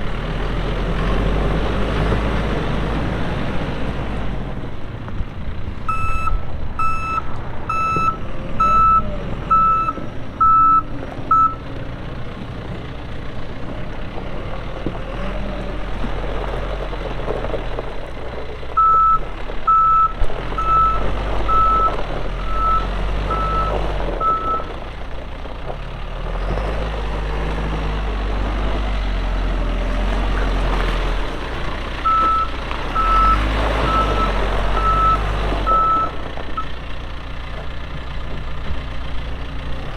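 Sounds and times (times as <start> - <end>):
diesel engine revving: 0.0 - 39.9
backup alarm beeping: 5.9 - 11.6, 32.1 - 36.1.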